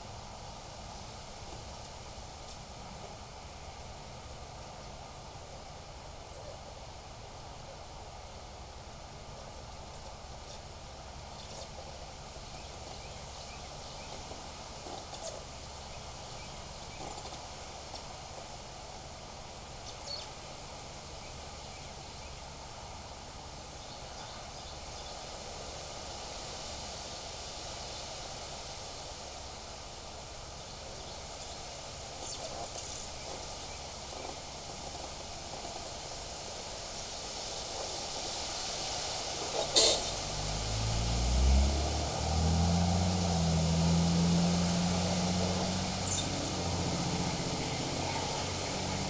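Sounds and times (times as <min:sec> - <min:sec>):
vehicle engine hum: 0:30.0 - 0:49.0.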